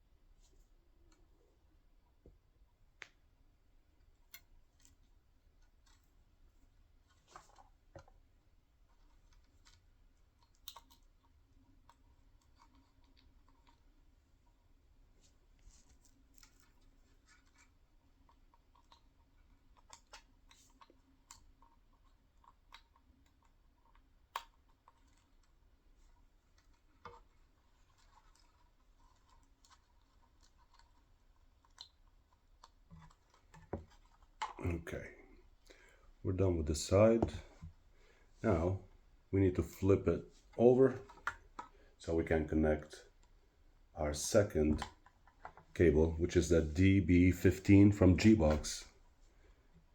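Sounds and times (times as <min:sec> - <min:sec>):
faint handling clicks and taps: 0:15.2 - 0:36.0, 0:36.8 - 0:38.2, 0:39.6 - 0:43.5, 0:44.2 - 0:49.9
low steady hum: 0:34.1 - 0:45.1, 0:45.7 - 0:49.9.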